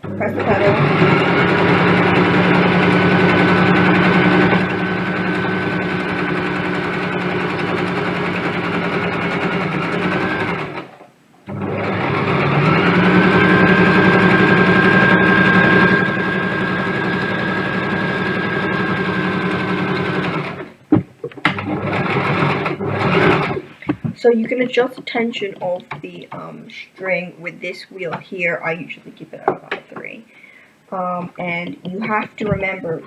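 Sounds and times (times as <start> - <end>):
electric sewing machine stitching: 0.0 - 20.8, 21.4 - 23.8.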